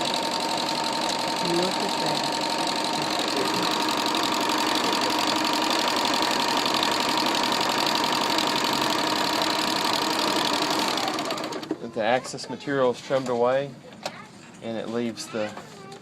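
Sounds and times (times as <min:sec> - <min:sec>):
sewing machine running: 0:00.0 - 0:11.8.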